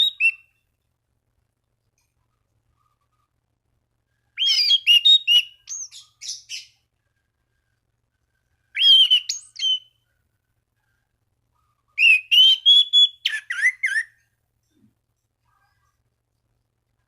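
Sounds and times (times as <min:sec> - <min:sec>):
thrush singing whistled notes: 0:00.0 - 0:00.6, 0:04.2 - 0:06.8, 0:08.6 - 0:10.1, 0:11.6 - 0:14.3.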